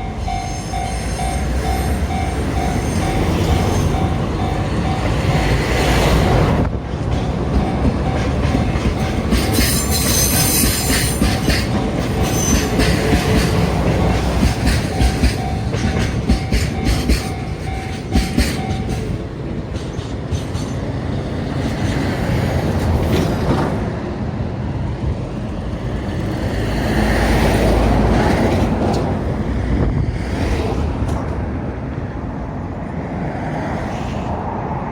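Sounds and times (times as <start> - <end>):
high wheel squeal: 0.0 - 5.8, 7.6 - 19.0
crossing warning bell ringing: 0.0 - 19.9
train wagons rumbling and clacking: 0.0 - 34.9.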